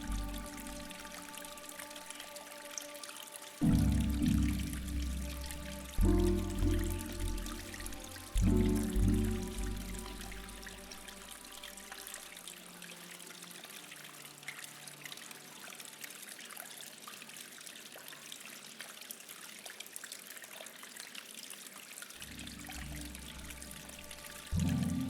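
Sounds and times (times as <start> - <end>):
faint music tones: 0.0 - 17.0, 22.2 - 25.0
water trickling: 0.0 - 25.0.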